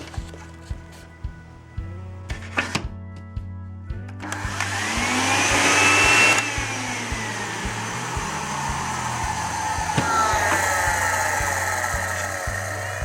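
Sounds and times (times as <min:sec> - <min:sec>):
vacuum cleaner running: 0:04.2 - 0:13.0.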